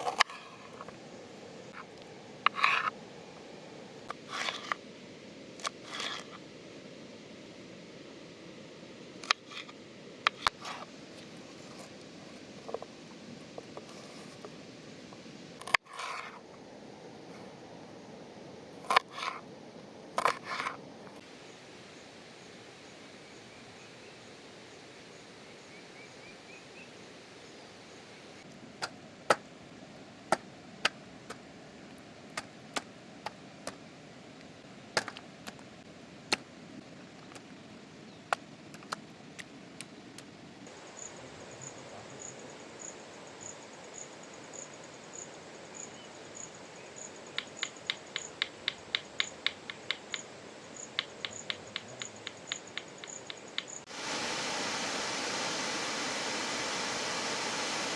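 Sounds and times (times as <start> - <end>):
insect chirping: 0.0 - 57.9
rain and falling water: 48.4 - 57.9.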